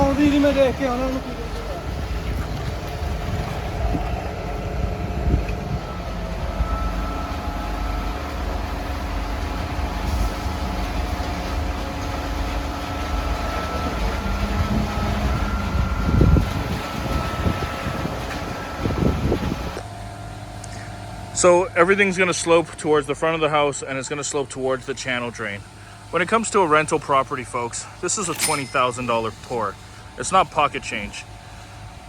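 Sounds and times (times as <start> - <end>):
diesel truck engine running: 0.0 - 23.7.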